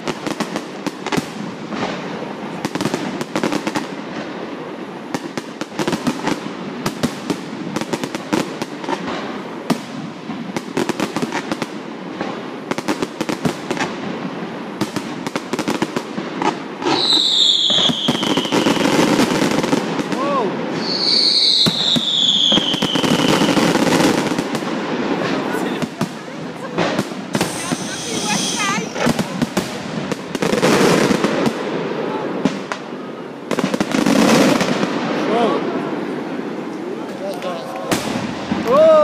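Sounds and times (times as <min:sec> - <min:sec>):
fireworks bangs and crackling: 0:00.0 - 0:39.0
whistling firework: 0:14.8 - 0:36.4.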